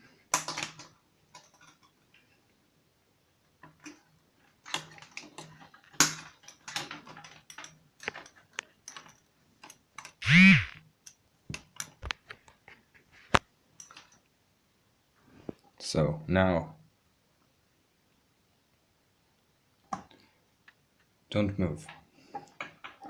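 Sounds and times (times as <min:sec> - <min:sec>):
loud rising and falling tone: 0:10.2 - 0:10.8.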